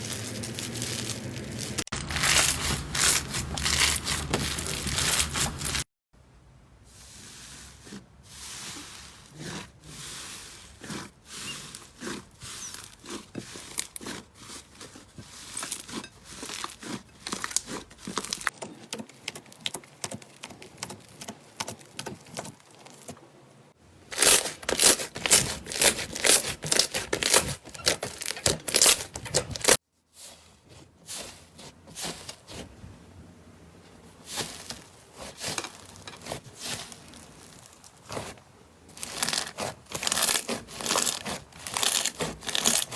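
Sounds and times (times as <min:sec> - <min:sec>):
slime crackling and popping: 0:24.2 - 0:29.8, 0:39.0 - 0:42.9.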